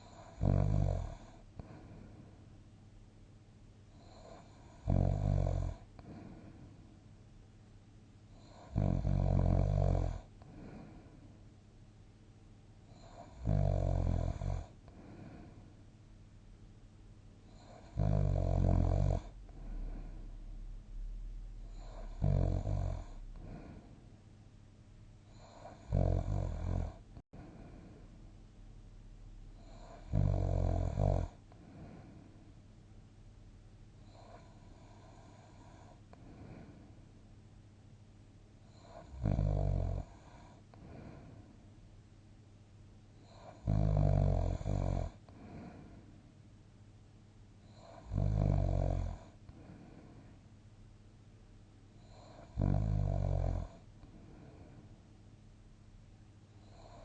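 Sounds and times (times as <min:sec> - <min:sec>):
person snoring: 0:00.0 - 0:02.0, 0:04.0 - 0:06.5, 0:08.4 - 0:11.2, 0:12.9 - 0:15.7, 0:17.5 - 0:20.3, 0:21.6 - 0:23.9, 0:25.3 - 0:28.0, 0:29.6 - 0:32.2, 0:38.7 - 0:41.4, 0:43.2 - 0:45.9, 0:47.7 - 0:50.1, 0:52.0 - 0:54.7
quiet breathing: 0:00.0 - 0:28.6, 0:29.4 - 0:33.2, 0:33.8 - 0:37.5, 0:38.6 - 0:42.0, 0:42.9 - 0:46.5, 0:47.5 - 0:50.7, 0:51.8 - 0:55.4, 0:56.1 - 0:57.0.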